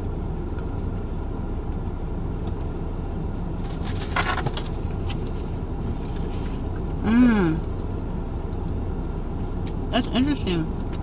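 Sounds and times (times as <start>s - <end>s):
car cabin rumble: 0.0s - 8.2s.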